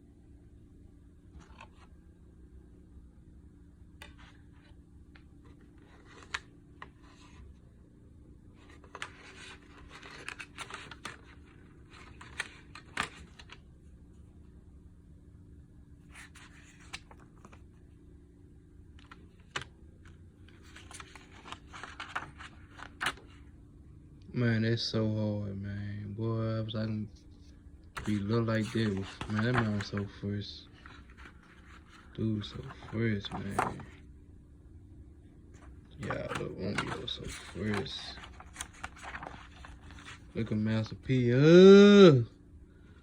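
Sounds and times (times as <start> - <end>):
faint steady hum: 0.0 - 43.0
plastic rustling: 35.6 - 40.4.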